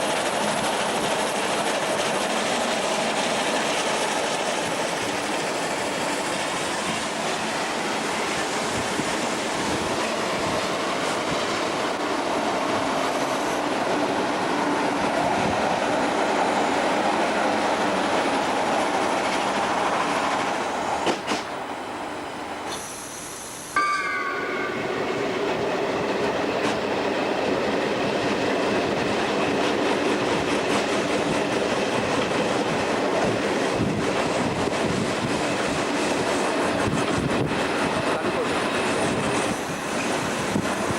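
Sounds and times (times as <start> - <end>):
train wheels rumbling on rail: 0.0 - 40.9
brief pitched tone: 23.8 - 25.7.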